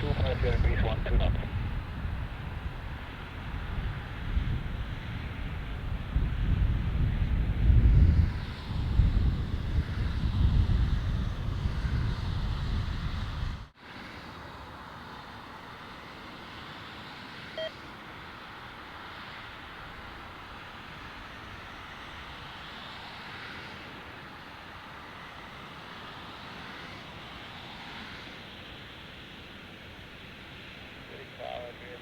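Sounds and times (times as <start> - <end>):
wind buffeting microphone: 0.0 - 13.7
steady outdoor hiss: 0.0 - 32.0.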